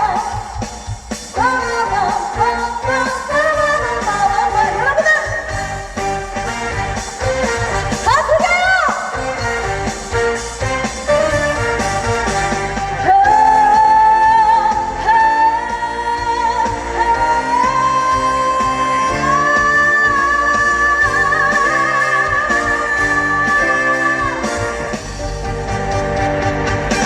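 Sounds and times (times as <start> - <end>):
live pop-rock band: 0.0 - 27.0.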